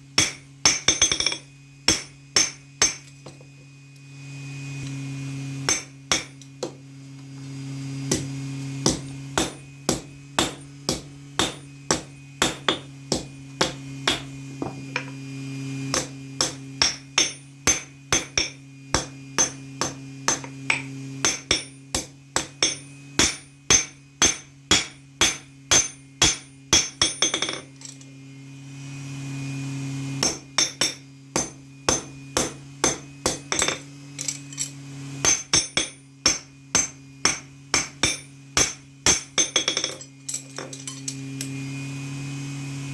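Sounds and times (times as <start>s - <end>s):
steady low hum: 0.0s - 42.9s
hammer striking steel on anvil: 0.2s - 3.4s, 5.7s - 6.8s, 8.1s - 15.1s, 15.9s - 27.7s, 30.2s - 34.4s, 35.2s - 41.1s.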